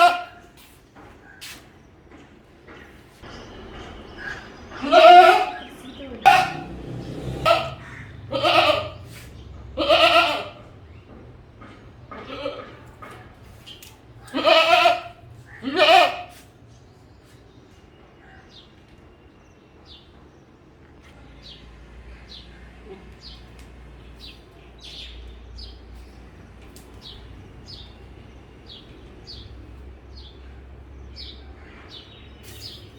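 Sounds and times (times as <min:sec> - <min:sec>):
goat bleating: 0:00.0 - 0:00.4, 0:04.8 - 0:06.7, 0:07.4 - 0:10.7, 0:12.1 - 0:13.0, 0:14.2 - 0:16.4.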